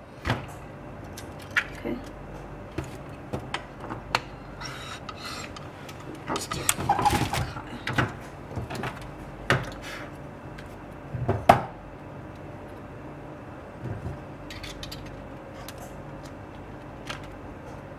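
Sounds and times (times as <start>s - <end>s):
tools and parts clicking: 14.5s - 15.8s.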